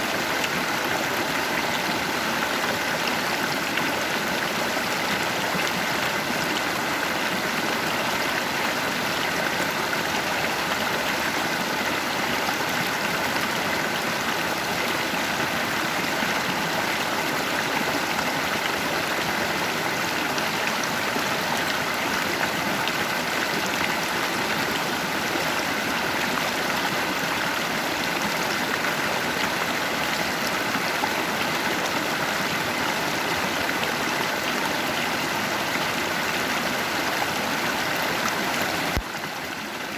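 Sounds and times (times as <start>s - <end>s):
water rushing over rocks: 0.0s - 39.9s.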